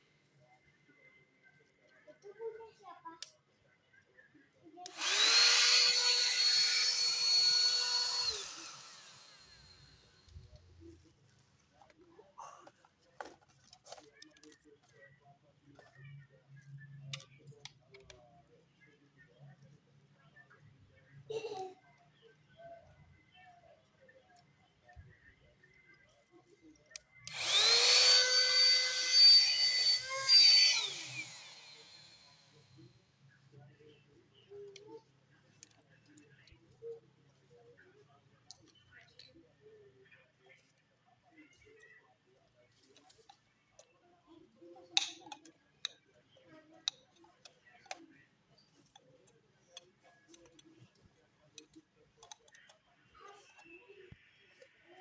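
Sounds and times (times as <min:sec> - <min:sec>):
mini vacuum cleaner whining: 0:04.9 - 0:10.5, 0:27.3 - 0:32.9.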